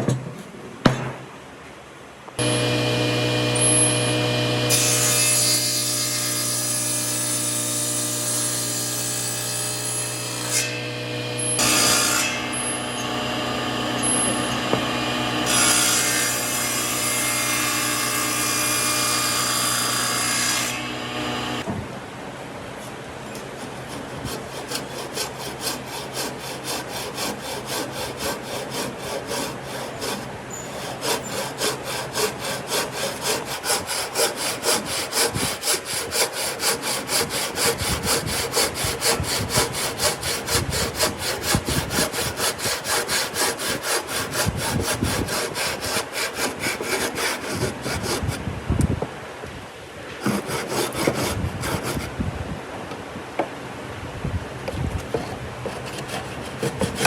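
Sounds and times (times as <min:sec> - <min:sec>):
hand saw cutting wood: 0:02.4 - 0:21.7, 0:23.3 - 0:48.5, 0:50.1 - 0:52.2, 0:55.0 - 0:57.0.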